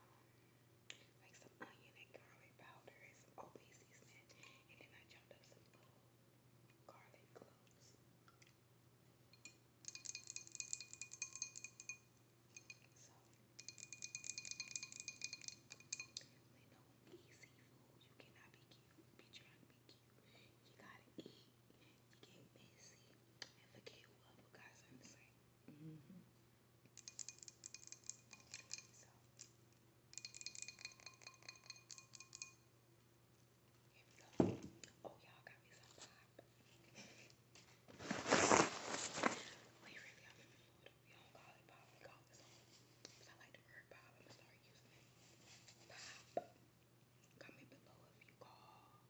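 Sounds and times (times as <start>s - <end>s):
rapid rattling and clinking: 9.4s - 12.8s, 13.6s - 16.2s, 27.0s - 29.5s, 30.2s - 32.6s.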